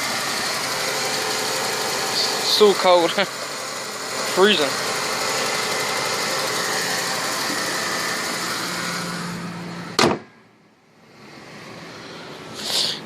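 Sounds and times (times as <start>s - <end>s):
car engine idling: 0.0s - 13.0s
sharp bang: 10.0s - 10.4s.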